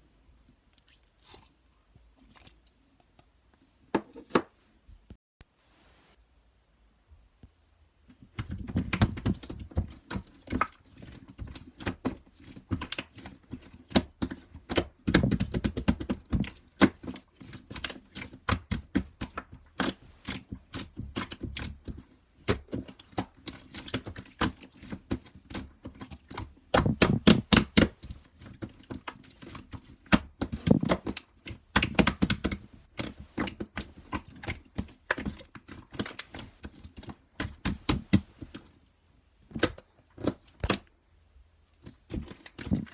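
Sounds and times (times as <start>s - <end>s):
paper taps clicks and rustles: 25.8s - 29.0s, 30.0s - 38.6s.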